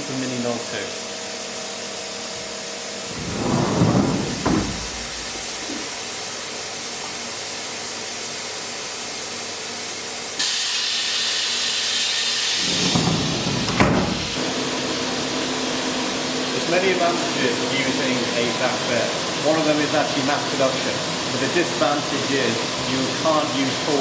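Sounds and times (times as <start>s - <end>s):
milling machine hiss: 10.3s - 24.0s
louder sharp hiss: 10.4s - 13.4s.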